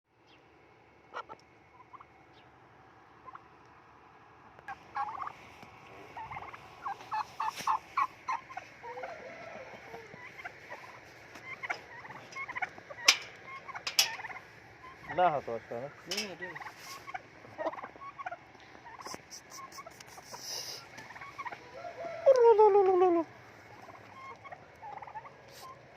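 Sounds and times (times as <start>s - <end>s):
chickens clucking: 1.0s - 3.9s, 4.6s - 25.9s.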